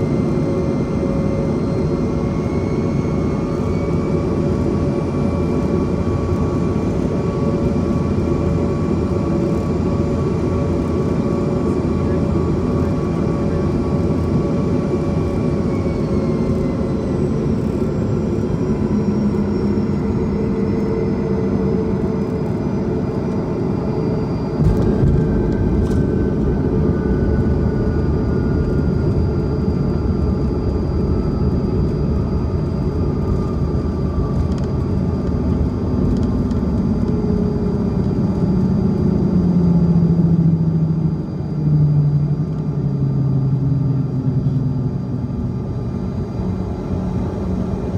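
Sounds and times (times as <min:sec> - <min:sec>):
jet cabin rumble and engine whine: 0:00.0 - 0:47.9
sudden thump: 0:24.6 - 0:27.1.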